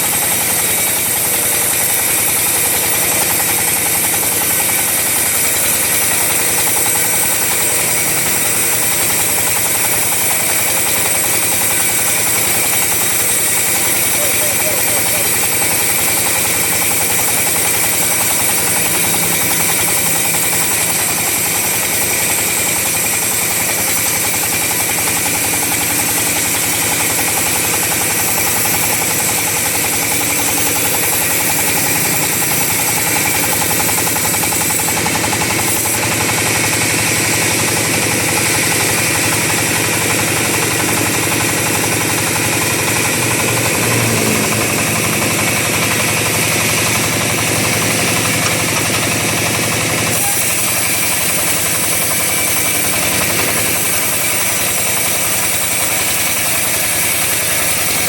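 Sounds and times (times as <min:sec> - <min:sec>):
chainsaw cutting log: 0:00.0 - 0:58.0.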